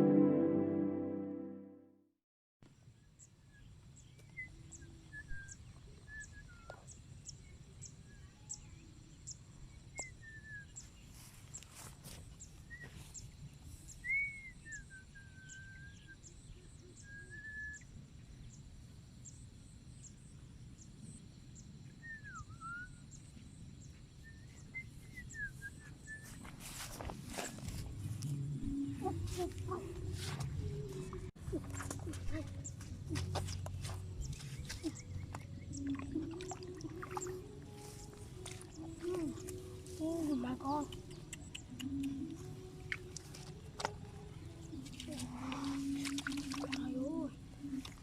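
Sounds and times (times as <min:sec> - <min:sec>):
whistled bird calls: 0:13.9 - 0:17.9, 0:22.0 - 0:23.2, 0:24.2 - 0:26.5.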